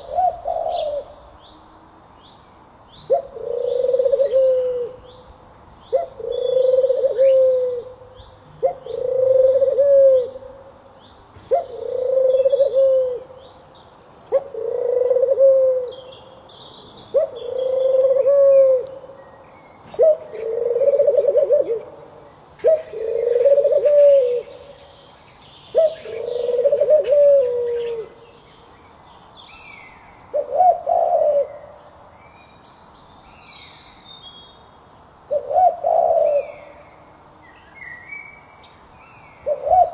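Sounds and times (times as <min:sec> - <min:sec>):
bird cooing: 0:00.0 - 0:01.3, 0:03.0 - 0:05.2, 0:05.9 - 0:10.7, 0:11.5 - 0:13.5, 0:14.3 - 0:16.2, 0:17.0 - 0:19.2, 0:19.9 - 0:24.9, 0:25.7 - 0:28.3, 0:30.3 - 0:31.8, 0:35.3 - 0:37.0, 0:39.4 - 0:39.9
small birds chirping: 0:24.4 - 0:30.2.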